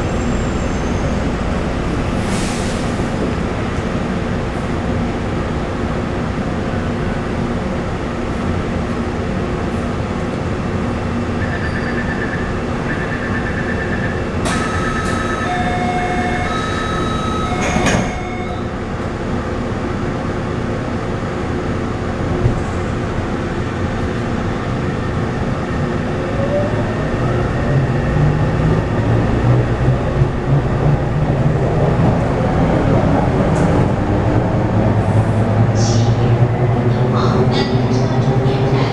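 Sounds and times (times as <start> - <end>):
train interior rumble: 0.0 - 38.9
train motor whine: 14.4 - 18.8.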